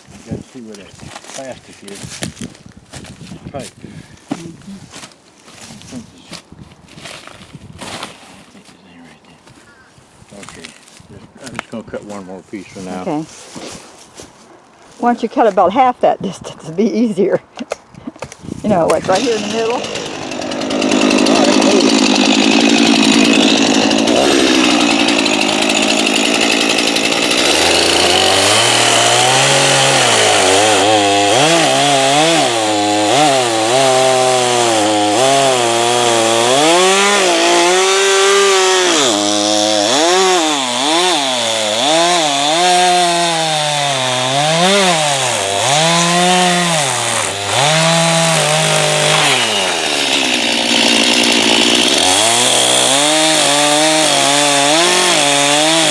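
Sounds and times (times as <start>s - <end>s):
chainsaw cutting log: 18.6s - 55.9s.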